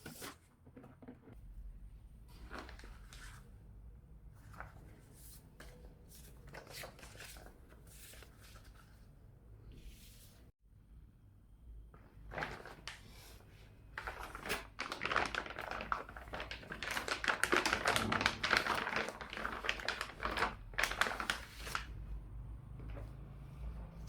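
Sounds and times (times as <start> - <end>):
packaging crinkling and rustling: 12.2 - 13.2, 13.9 - 22.0.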